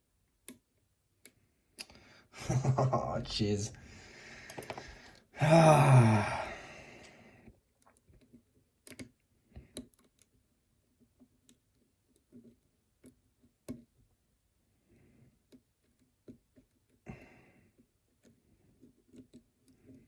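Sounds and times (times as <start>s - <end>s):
person sighing: 1.9s - 7.2s.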